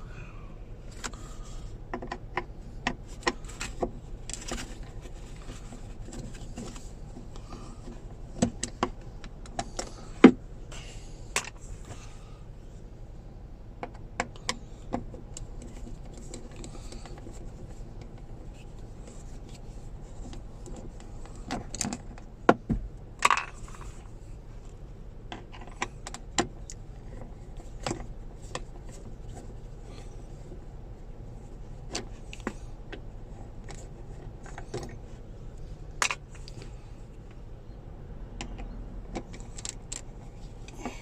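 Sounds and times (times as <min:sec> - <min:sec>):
hard plastic parts clicking and knocking: 0:01.9 - 0:04.8, 0:05.4 - 0:10.4, 0:36.0 - 0:36.7.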